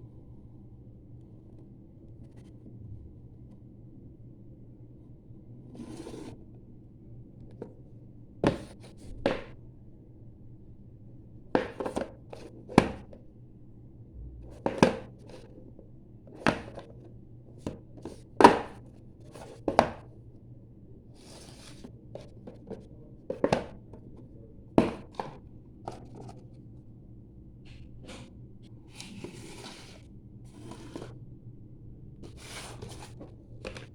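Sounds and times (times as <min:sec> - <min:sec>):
rustling scrape: 0:28.9 - 0:31.2, 0:32.2 - 0:33.9.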